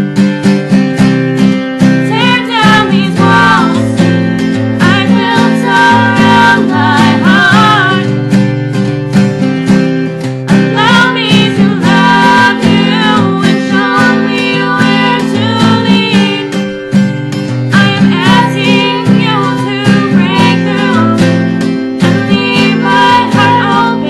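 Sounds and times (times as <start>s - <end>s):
acoustic guitar strumming: 0.0s - 24.0s
person singing: 2.1s - 8.3s, 10.8s - 16.7s, 17.7s - 21.4s, 22.0s - 24.0s.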